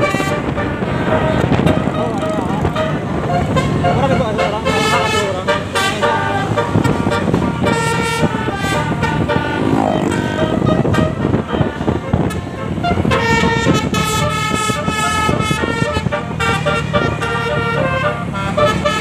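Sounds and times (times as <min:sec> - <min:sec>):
multi-tone bus horn tune: 0:00.0 - 0:19.0
road noise: 0:00.0 - 0:19.0.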